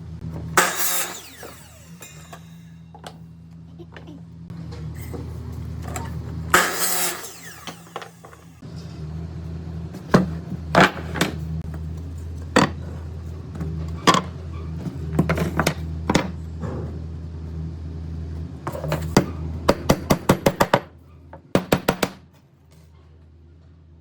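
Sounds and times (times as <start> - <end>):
power tool motor humming: 0.6 - 2.7, 6.5 - 8.6.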